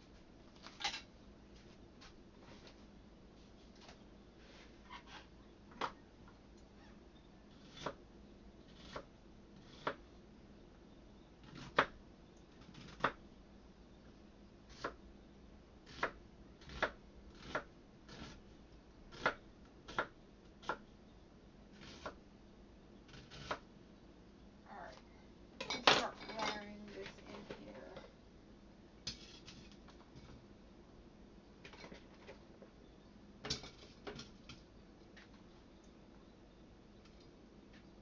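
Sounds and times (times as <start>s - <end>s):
faint steady hum: 0.0s - 38.0s
kitchen utensils knocking: 25.6s - 26.6s.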